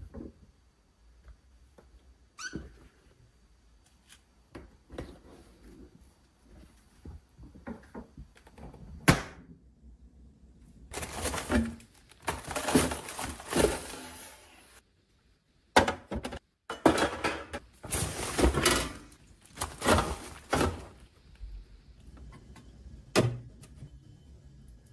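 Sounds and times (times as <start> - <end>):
household items clattering: 10.9 - 14.6, 15.8 - 21.1.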